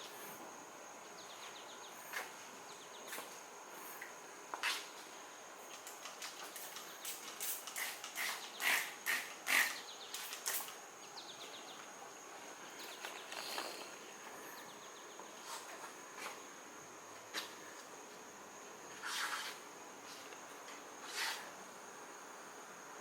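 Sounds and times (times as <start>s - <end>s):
high-pitched insect drone: 12.6s - 15.7s.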